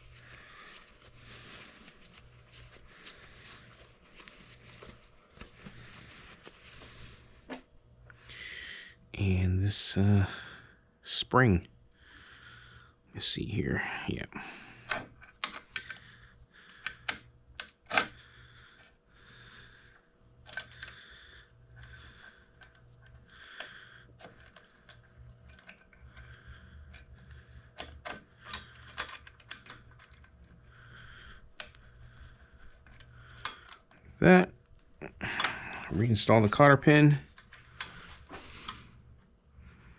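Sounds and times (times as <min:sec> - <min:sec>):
small metal parts clicking: 0:20.4 - 0:21.0, 0:27.8 - 0:30.4.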